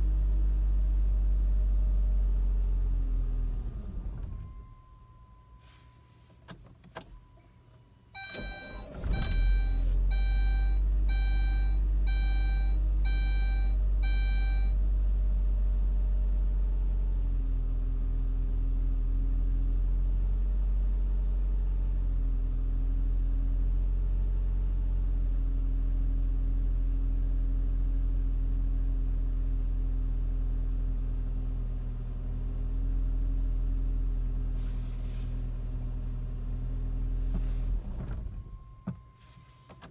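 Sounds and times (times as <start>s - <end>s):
car engine starting and idling: 0.0s - 18.3s, 31.8s - 39.9s
dashboard warning chime beeping: 8.2s - 14.8s, 37.4s - 39.9s.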